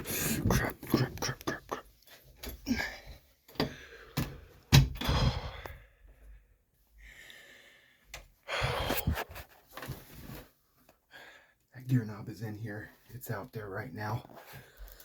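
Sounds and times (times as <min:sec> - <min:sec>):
breathy sigh: 0:02.6 - 0:04.2, 0:05.0 - 0:05.9.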